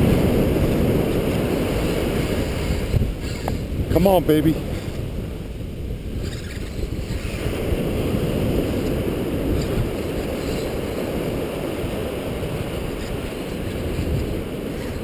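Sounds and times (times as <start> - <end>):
ocean surf on a beach: 0.0 - 15.0
wind buffeting microphone: 0.0 - 15.0.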